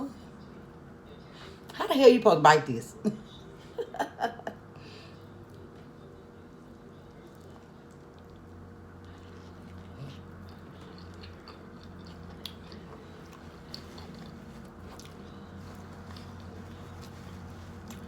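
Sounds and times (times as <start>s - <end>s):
steady low hum: 0.0s - 18.0s
person chewing crusty bread: 6.9s - 18.0s.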